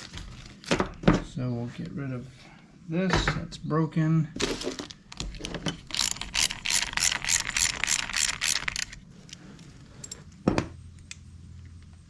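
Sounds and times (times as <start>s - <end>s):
ratchet tool clicking: 5.9s - 9.0s.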